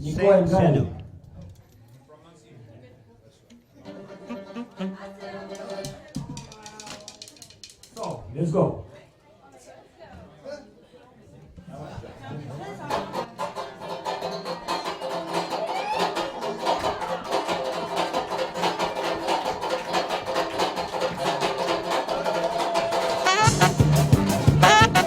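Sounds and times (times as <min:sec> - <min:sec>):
brass band playing: 0:03.9 - 0:05.8, 0:23.1 - 0:25.0
quick steady drum beat: 0:23.2 - 0:25.0
heavy bass drum beats: 0:23.3 - 0:25.0.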